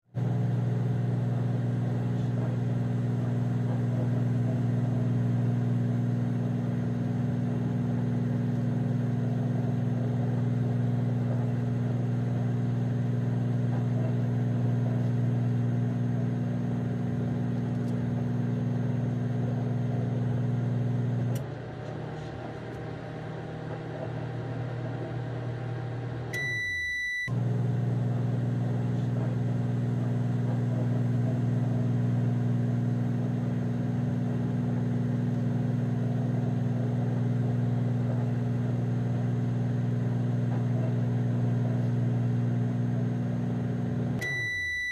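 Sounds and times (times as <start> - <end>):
microwave oven humming: 0.2 - 44.9
high microwave beep: 26.3 - 27.4, 44.2 - 44.9.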